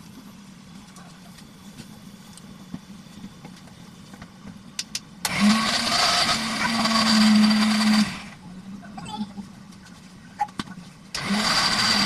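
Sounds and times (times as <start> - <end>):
mixer grinder motor grinding: 5.3 - 8.4, 11.2 - 12.0.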